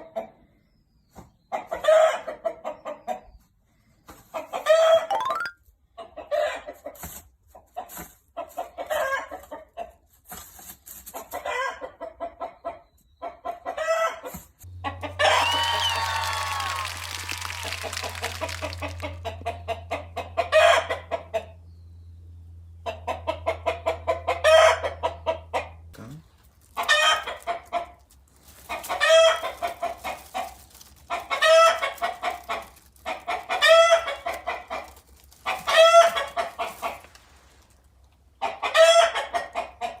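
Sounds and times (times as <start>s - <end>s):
chickens cackling: 1.5s - 3.3s, 11.3s - 21.6s, 22.8s - 25.8s, 26.7s - 37.3s, 38.3s - 40.0s.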